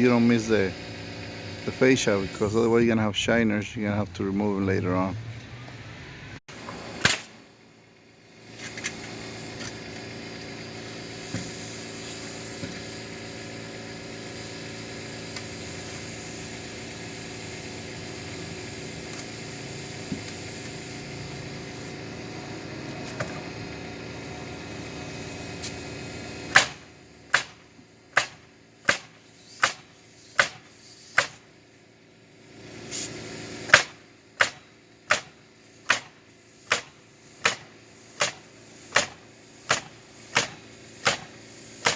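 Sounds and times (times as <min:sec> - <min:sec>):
hammering nails into roof: 0:26.5 - 0:31.4, 0:33.7 - 0:41.9.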